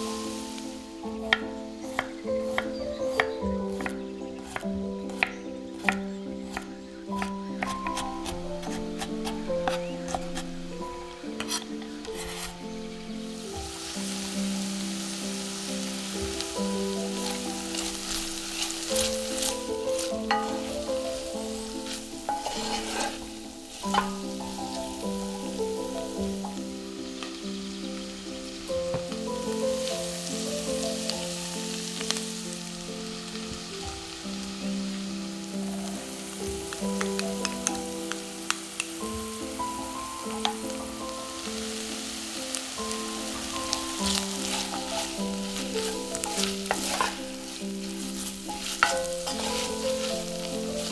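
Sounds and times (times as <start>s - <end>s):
food sizzling in a pan: 0.0s - 50.9s
soft background music: 0.0s - 50.9s
utensil clicking against pan: 1.2s - 12.6s, 16.2s - 25.6s, 36.7s - 39.0s, 40.2s - 40.9s, 42.9s - 50.9s.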